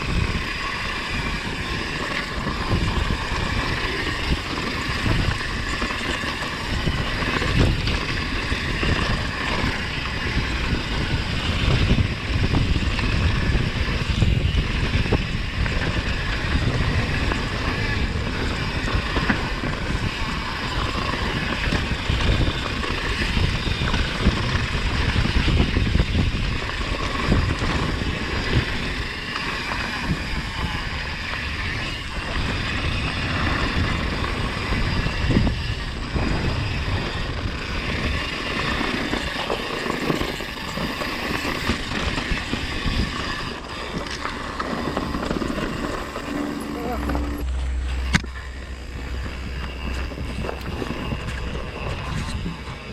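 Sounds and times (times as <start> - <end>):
wind buffeting microphone: 0.0 - 52.9.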